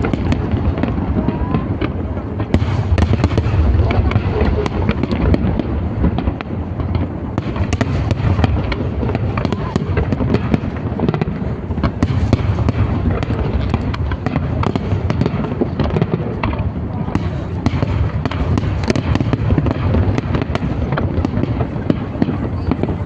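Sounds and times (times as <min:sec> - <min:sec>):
low rumble: 0:00.0 - 0:10.8
fireworks bangs and crackles: 0:00.0 - 0:23.0.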